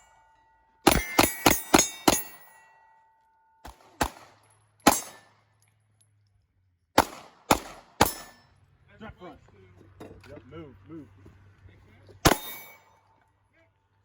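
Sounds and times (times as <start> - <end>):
bullets ringing on steel targets: 0.0 - 6.0, 7.0 - 8.7, 12.2 - 13.3
pistol shots: 0.8 - 2.5, 3.6 - 5.4, 7.0 - 8.4, 12.2 - 12.8.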